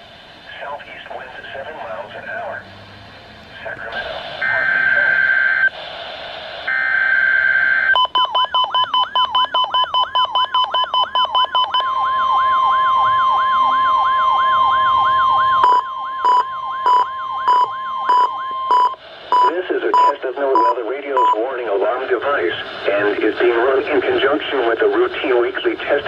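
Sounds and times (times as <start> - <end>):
alarm beeps: 6.7 - 21.4
warning alarm tone: 6.7 - 21.4.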